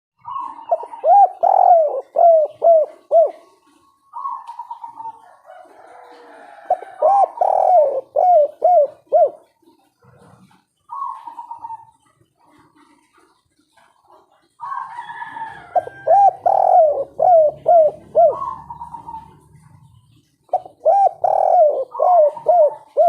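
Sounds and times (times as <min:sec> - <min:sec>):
dove cooing: 0:00.2 - 0:23.0.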